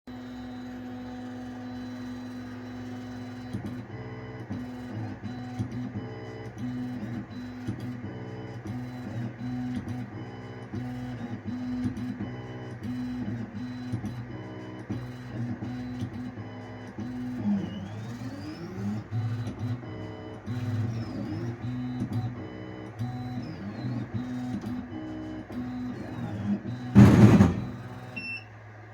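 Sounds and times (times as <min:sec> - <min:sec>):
stepper motors humming: 0:25.6 - 0:28.4.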